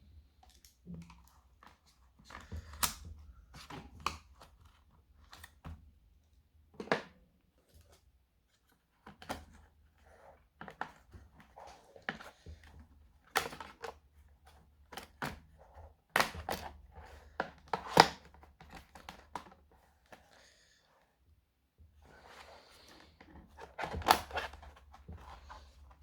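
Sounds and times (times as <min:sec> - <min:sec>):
plastic laptop case clicks and knocks: 0:16.1 - 0:19.6, 0:23.6 - 0:25.5.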